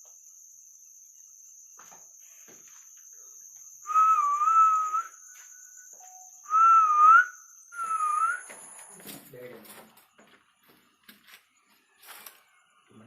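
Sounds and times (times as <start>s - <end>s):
crickets droning: 0.0s - 13.0s
person whistling: 3.9s - 8.6s.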